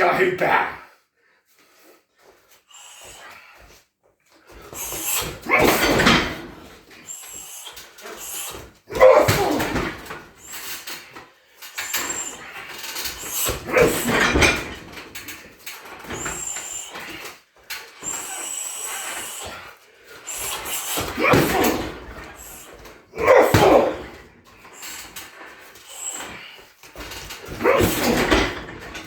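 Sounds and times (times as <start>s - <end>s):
hissing breaths: 1.2s - 3.9s, 4.5s - 6.1s, 9.5s - 14.6s, 15.8s - 22.9s, 23.5s - 28.4s
man grunting: 5.4s - 6.4s, 8.9s - 10.0s, 21.1s - 22.0s, 23.2s - 24.2s, 27.6s - 28.5s.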